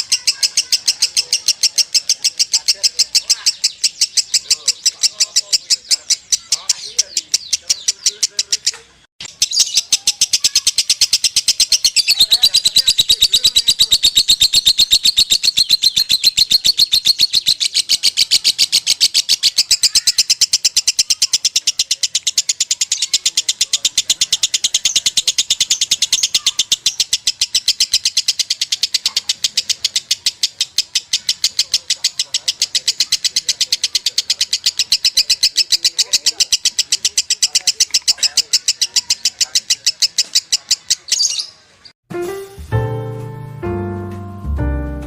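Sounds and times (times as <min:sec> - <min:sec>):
lovebird chattering song: 0:00.0 - 0:41.9.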